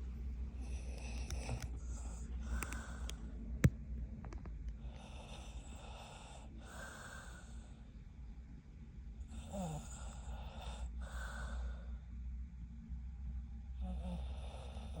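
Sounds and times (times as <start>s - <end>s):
woman snoring: 9.3s - 11.8s, 13.8s - 15.0s.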